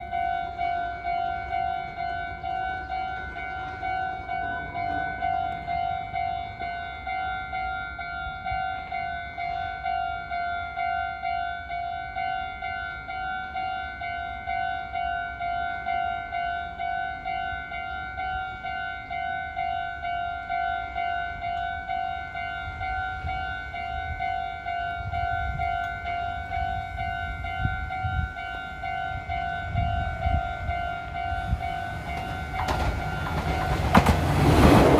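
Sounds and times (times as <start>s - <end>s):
electric train rumbling: 0.0s - 34.9s
level-crossing warning bell: 0.0s - 34.9s.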